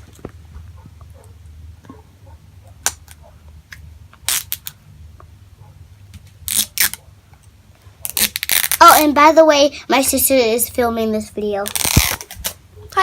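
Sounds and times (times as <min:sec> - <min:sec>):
low steady hum: 0:00.0 - 0:13.0
plastic packaging crackling: 0:06.2 - 0:07.0, 0:08.0 - 0:09.1, 0:11.6 - 0:12.6.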